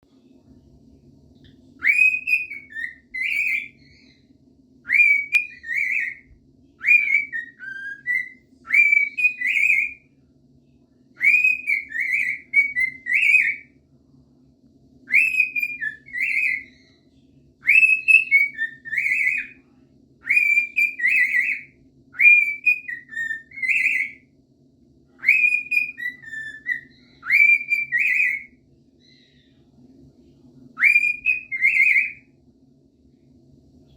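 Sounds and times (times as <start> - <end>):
steady low hum: 0.0 - 33.9
cockatiel whistling a tune: 1.8 - 4.2, 4.8 - 10.0, 11.2 - 13.7, 15.0 - 17.0, 17.6 - 19.6, 20.2 - 24.2, 25.2 - 29.3, 30.8 - 32.3.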